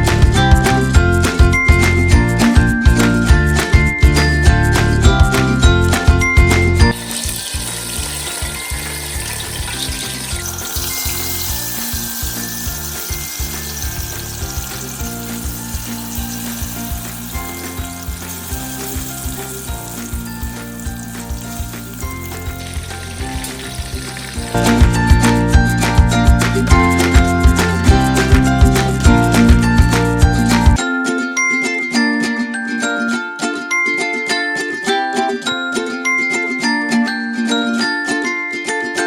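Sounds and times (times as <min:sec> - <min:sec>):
background music: 0:00.0 - 0:39.0
food sizzling in hot oil: 0:06.9 - 0:30.8.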